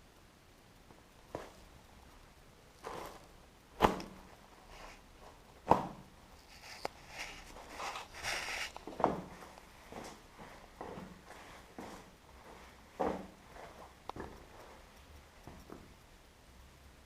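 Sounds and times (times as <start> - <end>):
scuffing and rustling: 1.3 - 1.7, 2.8 - 15.9
sharp thuds: 3.8 - 4.2.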